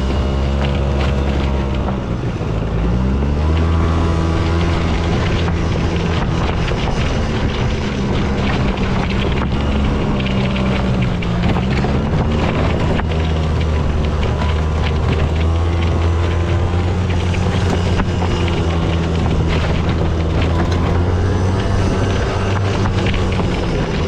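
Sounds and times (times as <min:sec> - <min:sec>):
pickup truck engine accelerating: 0:00.0 - 0:24.0.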